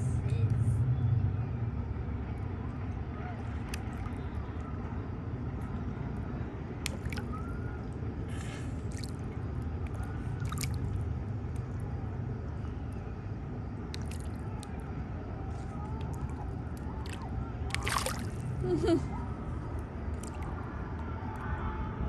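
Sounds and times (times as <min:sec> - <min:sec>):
steady low rumble: 0:00.0 - 0:22.0
fish popping at water surface: 0:06.8 - 0:07.3, 0:17.0 - 0:18.4
short water splash: 0:06.8 - 0:07.4, 0:10.4 - 0:11.0, 0:13.9 - 0:14.4, 0:17.0 - 0:18.4.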